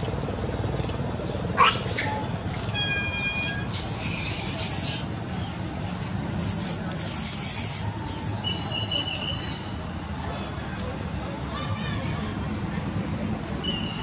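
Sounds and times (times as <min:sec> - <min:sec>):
baby monkey squealing: 0:01.6 - 0:02.2, 0:03.3 - 0:09.2.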